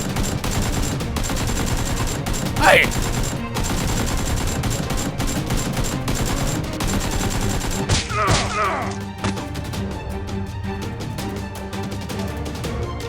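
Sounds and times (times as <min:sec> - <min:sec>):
rapid gunfire bursts: 0:00.0 - 0:08.0
background music: 0:00.0 - 0:13.0.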